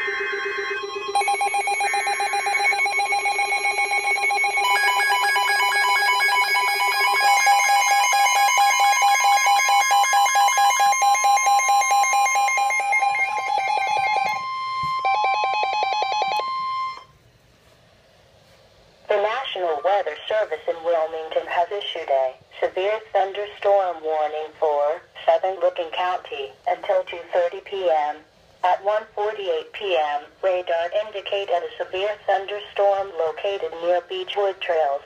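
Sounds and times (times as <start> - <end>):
electronic alert tones beeping: 0.0 - 17.1
steady warning alarm tone: 0.0 - 17.2.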